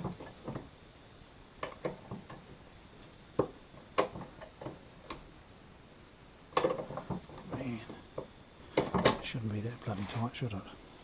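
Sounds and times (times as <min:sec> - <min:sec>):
metal tool clicks and knocks: 0:06.6 - 0:07.4.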